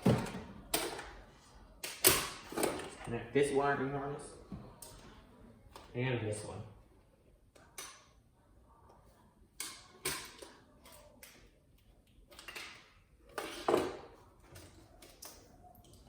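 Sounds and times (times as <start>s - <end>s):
plastic connectors clicking and clattering: 12.1s - 16.0s.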